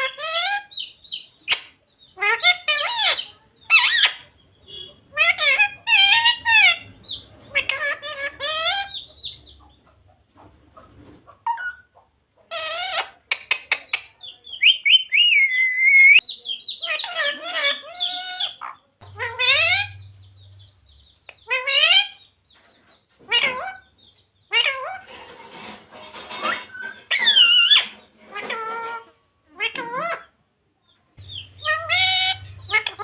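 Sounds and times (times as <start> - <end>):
parrot squawking and warbling: 0.0 - 0.8, 1.5 - 9.1, 11.4 - 20.2, 21.4 - 22.2, 23.2 - 23.9, 24.5 - 25.3, 26.1 - 30.4, 31.2 - 33.0.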